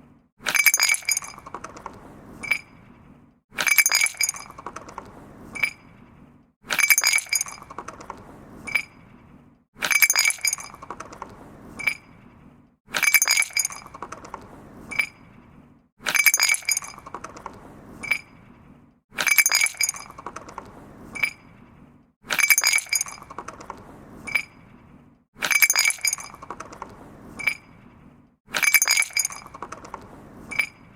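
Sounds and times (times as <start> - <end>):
glass and stone clinking: 0.4 - 1.8, 3.6 - 4.9, 6.7 - 8.0, 9.8 - 11.0, 13.0 - 14.2, 16.0 - 17.3, 19.2 - 20.5, 22.3 - 23.5, 25.4 - 26.8, 28.5 - 29.9.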